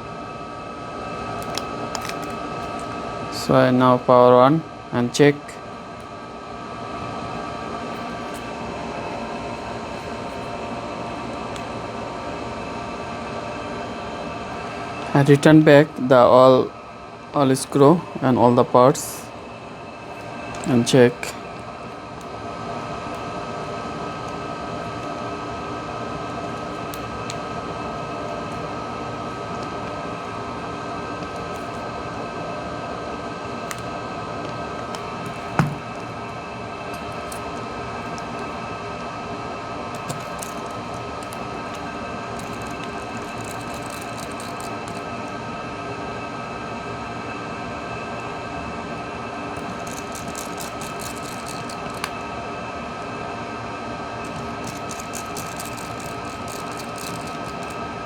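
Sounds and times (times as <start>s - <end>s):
steady hum with held tones: 0.0s - 58.0s
screwdriver clicks and taps: 1.4s - 2.9s, 33.7s - 36.0s, 40.0s - 45.1s, 49.6s - 52.2s, 54.3s - 57.8s.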